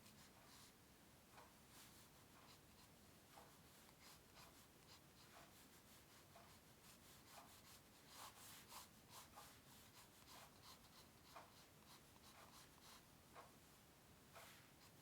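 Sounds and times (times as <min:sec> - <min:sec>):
pencil scratching on paper: 0:04.0 - 0:13.1.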